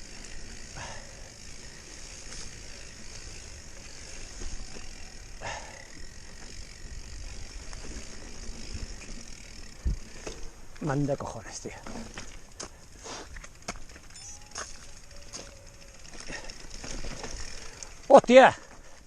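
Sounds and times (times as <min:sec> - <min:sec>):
constant hiss: 0:00.0 - 0:19.0
mountain bike rolling and rattling: 0:00.0 - 0:19.0
brief falling squeak: 0:14.1 - 0:14.8.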